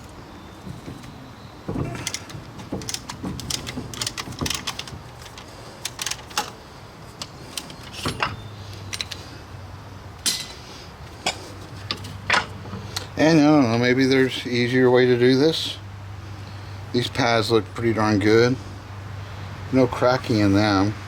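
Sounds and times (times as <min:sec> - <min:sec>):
metal tools clicking and tapping: 0:01.7 - 0:06.6, 0:07.2 - 0:09.2, 0:10.2 - 0:10.6.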